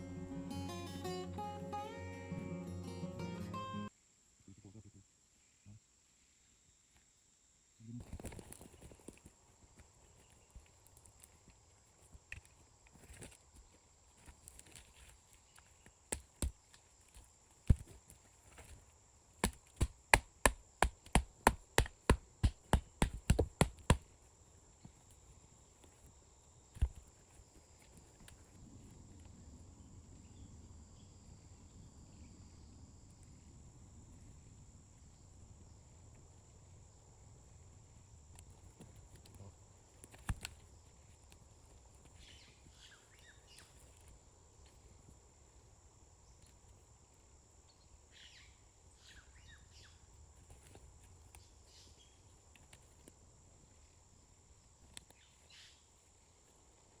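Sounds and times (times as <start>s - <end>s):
wood chopping strikes: 16.1s - 16.8s, 17.6s - 18.0s, 19.4s - 24.0s, 40.1s - 40.6s.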